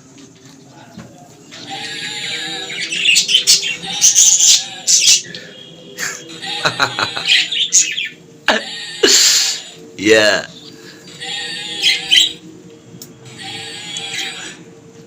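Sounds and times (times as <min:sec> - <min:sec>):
cockatiels squawking and chirping: 0:01.0 - 0:09.0, 0:11.1 - 0:12.4, 0:13.3 - 0:14.6.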